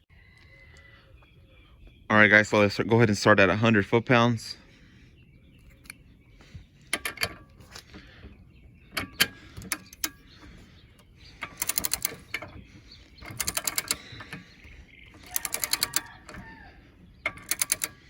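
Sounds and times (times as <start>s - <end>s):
ratchet clicking: 11.4s - 12.4s, 13.2s - 14.0s, 15.2s - 16.1s, 17.2s - 18.0s
metal tool clicks: 17.3s - 18.0s.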